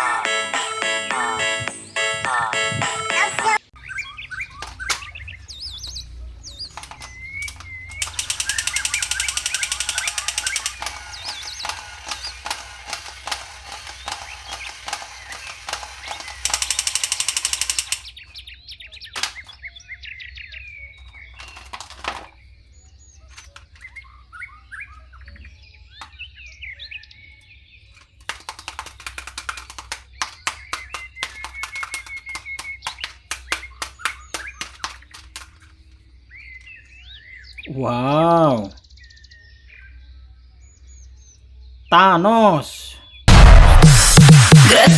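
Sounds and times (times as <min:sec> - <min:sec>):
birds chirping: 0:00.1 - 0:44.3
plastic packaging crackling: 0:06.7 - 0:16.7, 0:28.1 - 0:36.6.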